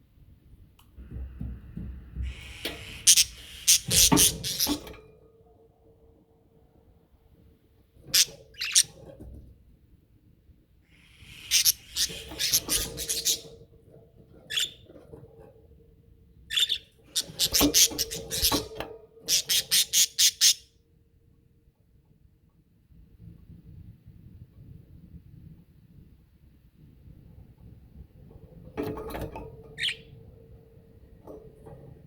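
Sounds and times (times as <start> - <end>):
budgerigars squawking and chirping: 2.3 - 4.8, 8.2 - 8.9, 11.0 - 13.5, 16.5 - 18.7, 19.3 - 20.6.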